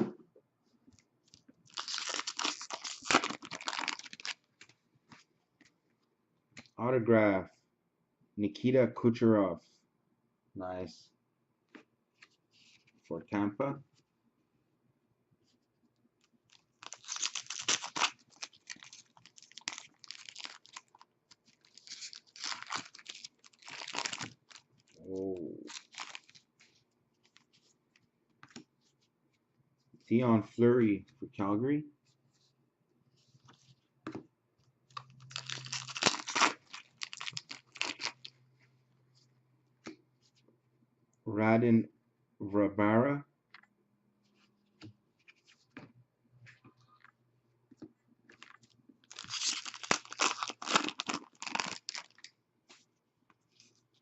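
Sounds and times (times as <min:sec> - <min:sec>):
plastic packaging crinkling: 0:01.7 - 0:04.7, 0:16.5 - 0:25.0, 0:25.7 - 0:26.5, 0:35.0 - 0:38.4, 0:48.4 - 0:52.3.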